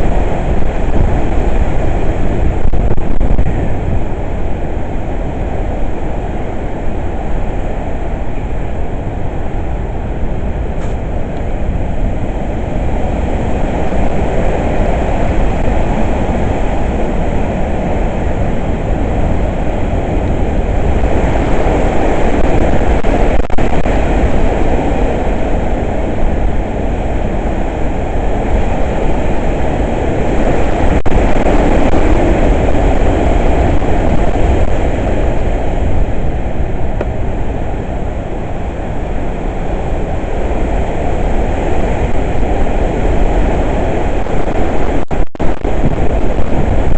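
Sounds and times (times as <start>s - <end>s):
hurricane wind gusting: 0.0s - 46.9s.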